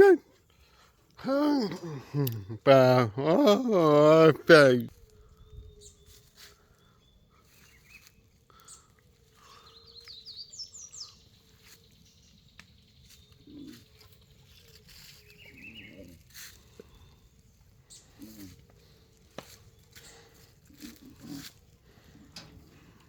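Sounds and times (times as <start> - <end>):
bird chirping: 5.4 - 16.2.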